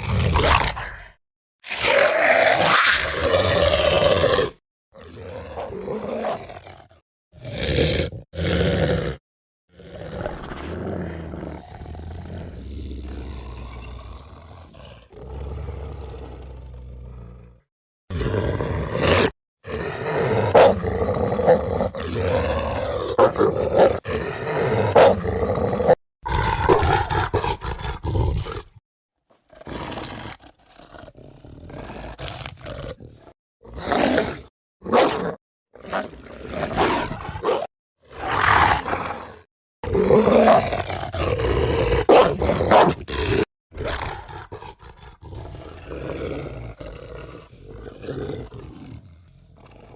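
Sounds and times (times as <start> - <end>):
creature growling: 0.0 - 28.8, 29.4 - 49.9
creature roaring: 0.0 - 28.8, 29.5 - 49.9.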